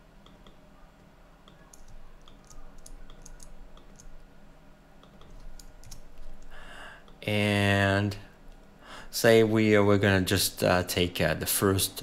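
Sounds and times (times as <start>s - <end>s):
computer mouse or key clicks: 1.4s - 4.2s, 5.0s - 6.5s.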